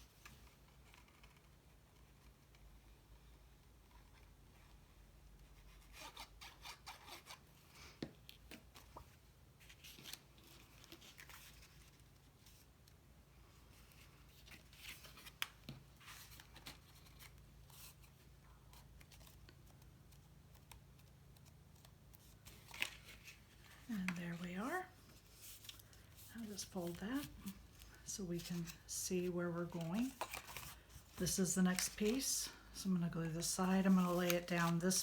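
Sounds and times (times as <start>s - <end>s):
cardstock crackling and rustling: 13.7s - 35.0s.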